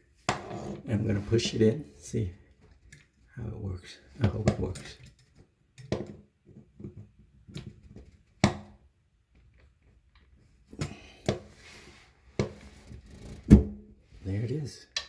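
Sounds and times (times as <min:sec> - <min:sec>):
pipe and connector clicking and knocking: 0:02.5 - 0:03.3, 0:04.2 - 0:11.4.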